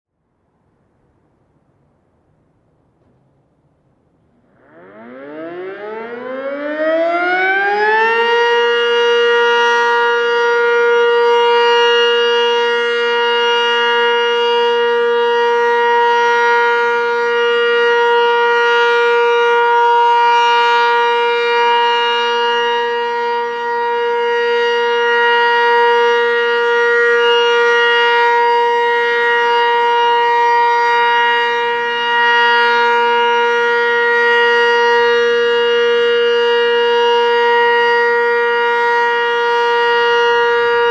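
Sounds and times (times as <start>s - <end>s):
two-tone siren winding up: 4.4s - 12.7s, 25.5s - 40.9s.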